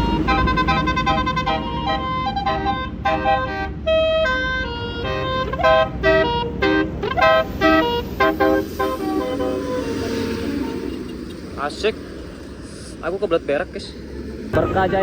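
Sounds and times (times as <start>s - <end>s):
bus horn playing a melody: 0.0s - 11.3s
bus engine rumble: 0.0s - 15.0s.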